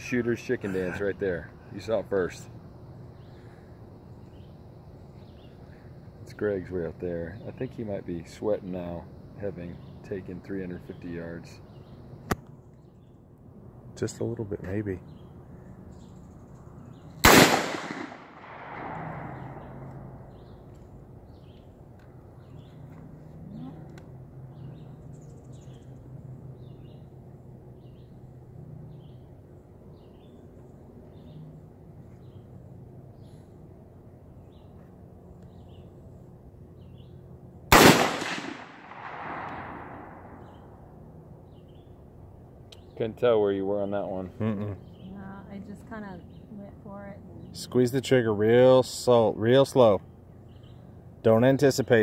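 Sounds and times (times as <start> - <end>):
rifle shot echoing: 17.2 - 19.8, 37.7 - 40.7.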